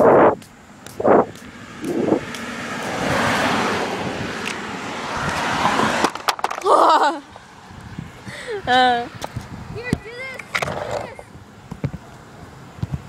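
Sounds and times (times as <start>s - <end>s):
car driving past: 1.0s - 6.2s.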